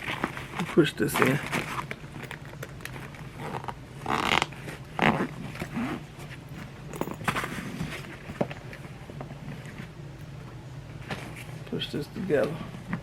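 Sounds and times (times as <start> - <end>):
bag clicks and rustles: 0.0 - 11.6
zipper on fabric bag: 3.3 - 8.3.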